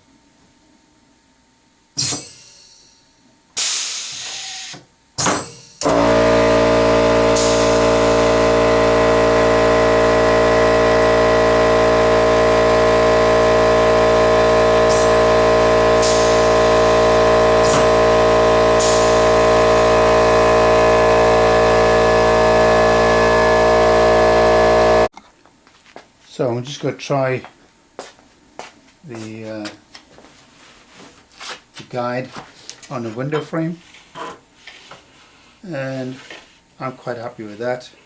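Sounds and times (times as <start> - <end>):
air compressor motor humming: 2.0 - 3.0, 3.6 - 25.1.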